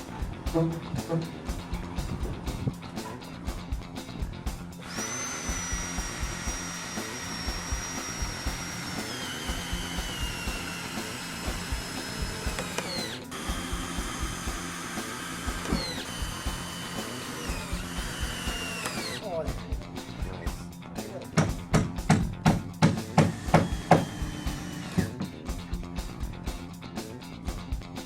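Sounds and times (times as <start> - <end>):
background music: 0.0 - 28.0
power drill driving screws: 4.8 - 19.2, 23.2 - 25.3.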